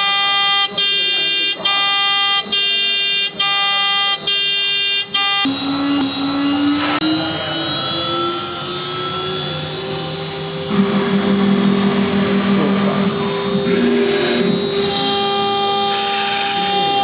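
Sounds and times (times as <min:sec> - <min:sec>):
machine motors whining: 0:05.0 - 0:17.0
low hum: 0:05.5 - 0:17.0.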